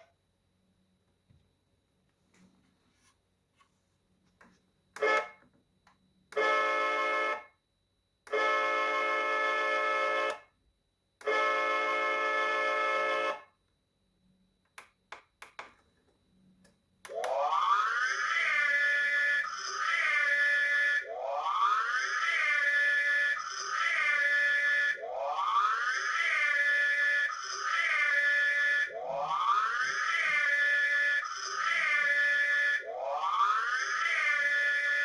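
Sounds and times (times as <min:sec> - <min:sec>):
clicks: 0:14.6 - 0:15.8, 0:16.6 - 0:17.4
siren wail rising in pitch: 0:17.1 - 0:35.0.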